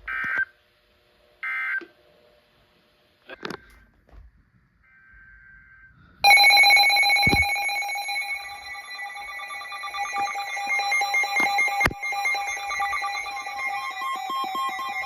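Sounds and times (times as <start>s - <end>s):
faint warbling data burst: 6.2s - 15.0s
loud pulsing electronic alert tone: 6.2s - 15.0s.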